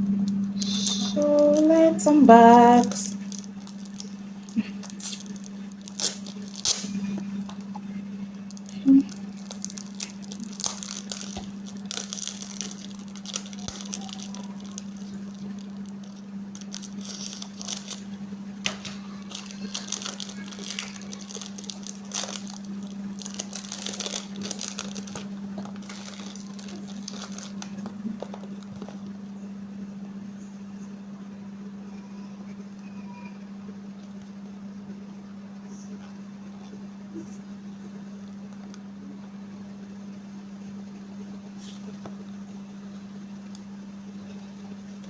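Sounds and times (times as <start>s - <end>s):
low steady hum: 0.0s - 45.0s
paper crinkling and tearing: 3.2s - 7.1s, 8.5s - 18.1s, 18.7s - 29.0s.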